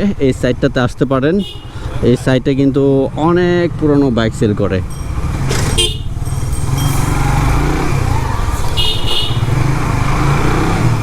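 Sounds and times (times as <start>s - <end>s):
motorcycle engine running: 4.8s - 10.3s.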